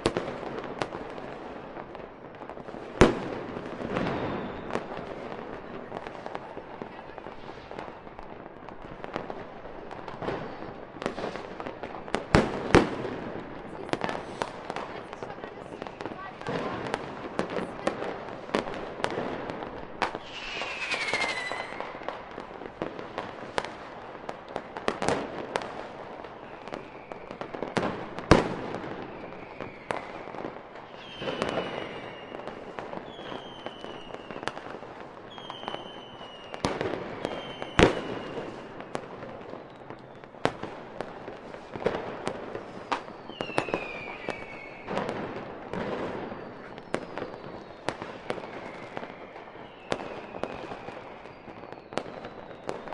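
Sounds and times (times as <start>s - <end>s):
fireworks bangs and crackling: 0.0s - 52.9s
falling firework whistles: 3.9s - 5.0s, 20.0s - 22.3s, 26.4s - 27.6s, 29.0s - 34.6s, 35.2s - 39.0s, 42.6s - 45.2s, 46.1s - 52.9s.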